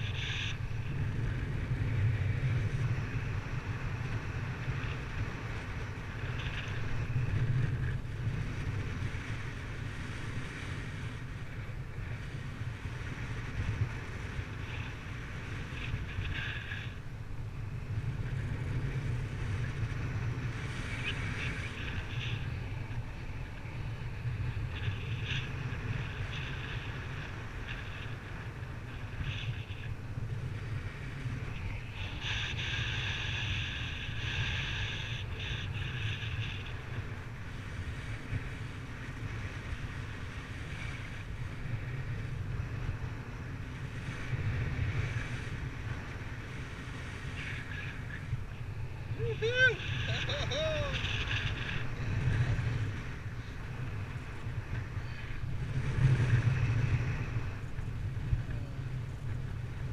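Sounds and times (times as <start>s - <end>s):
wind buffeting microphone: 0.0s - 59.9s.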